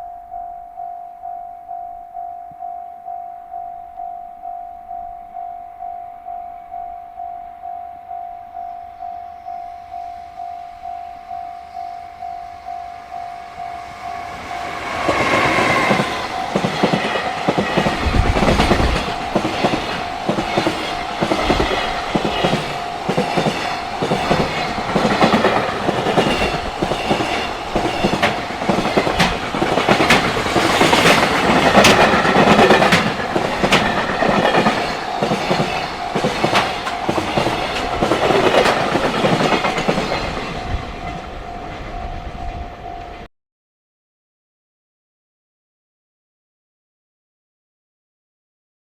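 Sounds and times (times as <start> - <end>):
level crossing warning bell: 0.0 - 43.3
train wheels clicking over rail joints: 14.8 - 41.9.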